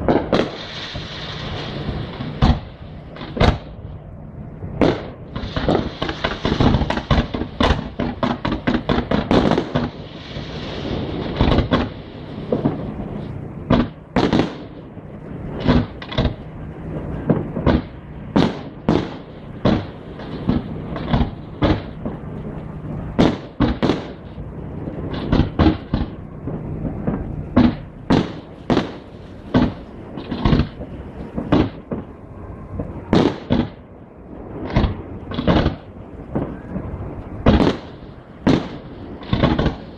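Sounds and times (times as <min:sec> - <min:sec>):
firework bangs: 0:00.0 - 0:39.9
fireworks bursting and crackling: 0:00.0 - 0:39.9.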